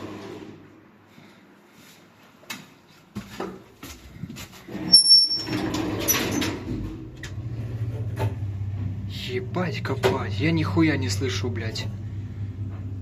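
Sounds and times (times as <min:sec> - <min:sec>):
piercing high squeal: 0:04.9 - 0:05.7
elevator doors rumbling shut: 0:04.9 - 0:13.0.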